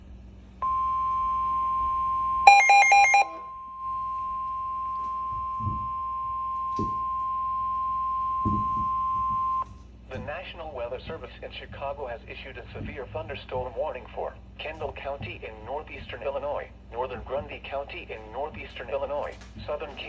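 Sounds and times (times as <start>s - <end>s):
higher alternating beeps: 0.6s - 9.6s
steady single-pitch alarm tone: 0.6s - 9.7s.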